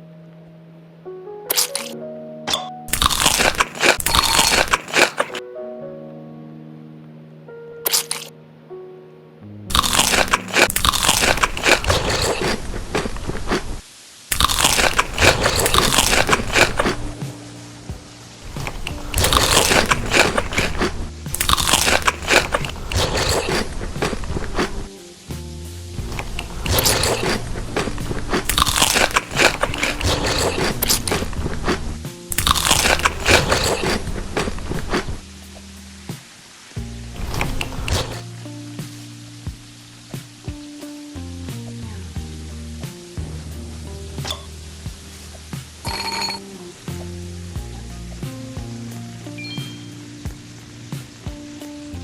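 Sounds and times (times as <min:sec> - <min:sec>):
background music: 0:00.0 - 0:13.0, 0:14.3 - 0:52.0
person chewing crunchy food: 0:01.5 - 0:02.0, 0:02.9 - 0:05.4, 0:07.9 - 0:08.3, 0:09.7 - 0:17.2, 0:18.4 - 0:24.9, 0:26.0 - 0:35.3, 0:37.2 - 0:38.2.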